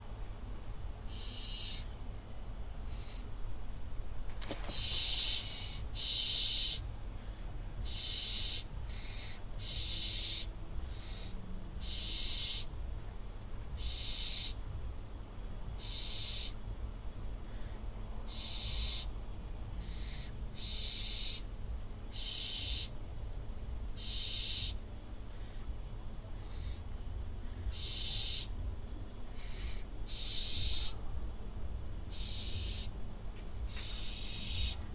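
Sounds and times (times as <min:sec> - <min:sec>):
low electrical hum: 0:00.0 - 0:34.9
owl chicks hissing calls: 0:01.1 - 0:01.9, 0:02.8 - 0:03.3, 0:04.3 - 0:12.7, 0:13.8 - 0:14.6, 0:15.7 - 0:16.6, 0:17.4 - 0:19.1, 0:19.8 - 0:21.5, 0:22.1 - 0:23.0, 0:23.9 - 0:25.7, 0:26.4 - 0:28.5, 0:29.2 - 0:31.0, 0:32.1 - 0:32.9, 0:33.6 - 0:34.9.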